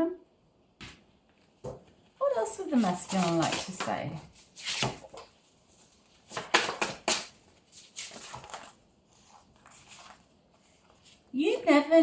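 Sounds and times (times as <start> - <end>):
cards being shuffled: 2.8 - 5.3, 6.3 - 11.2.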